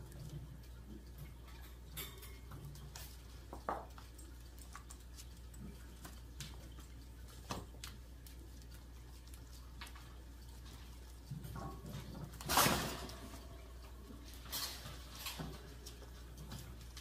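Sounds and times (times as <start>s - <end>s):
light clicks and clinks: 1.4s - 7.0s.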